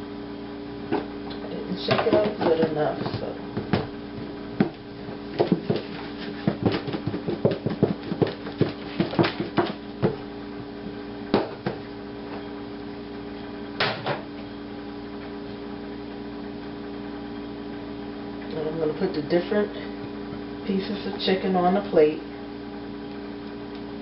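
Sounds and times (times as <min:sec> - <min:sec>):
container rattling knocks: 0:04.6 - 0:10.2.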